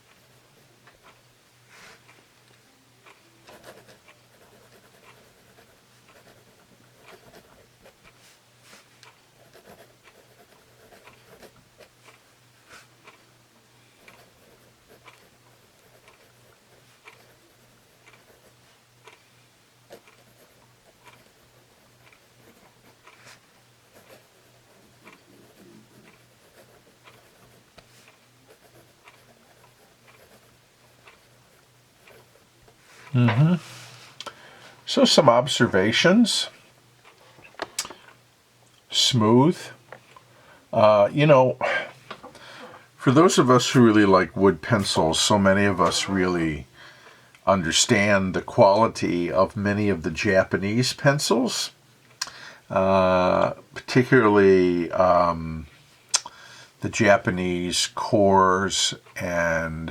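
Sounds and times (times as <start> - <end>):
pencil scratching on paper: 3.4 - 8.8, 9.4 - 12.9, 14.0 - 18.7, 19.9 - 32.4.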